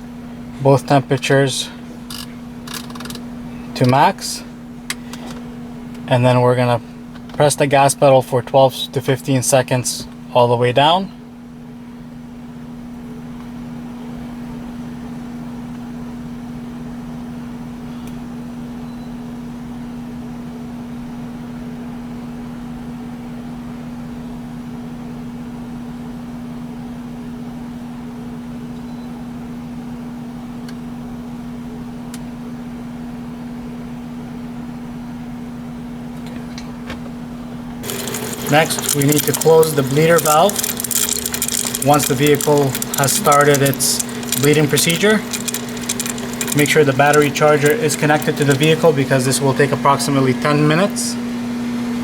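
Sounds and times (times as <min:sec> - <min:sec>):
electric motor hum: 0:37.8 - 0:52.0.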